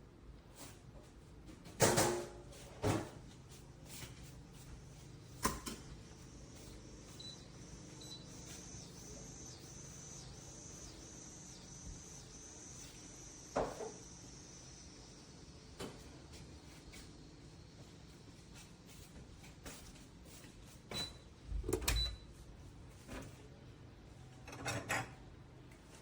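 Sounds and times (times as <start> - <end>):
thin high whine: 5.9 - 19.0.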